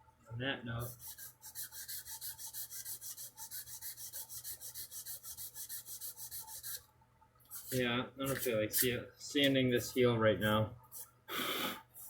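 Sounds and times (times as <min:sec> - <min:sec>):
sandpaper rubbing on wood: 0:00.8 - 0:06.8.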